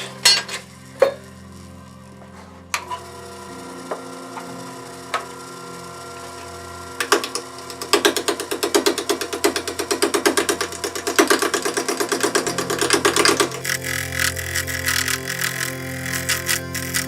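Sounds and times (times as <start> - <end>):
lathe motor hum: 0.0 - 17.0
turning tool knocking on wood: 7.0 - 17.0.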